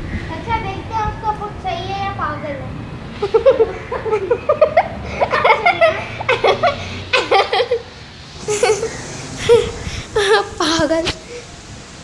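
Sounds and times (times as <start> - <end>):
people laughing hard: 3.2 - 10.6.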